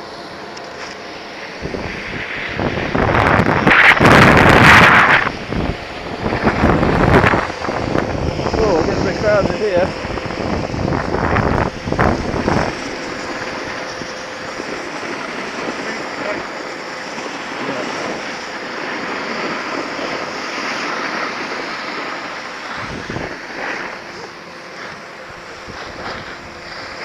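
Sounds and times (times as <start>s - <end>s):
wind on microphone: 1.5s - 27.0s
skis sliding on snow: 12.2s - 27.0s.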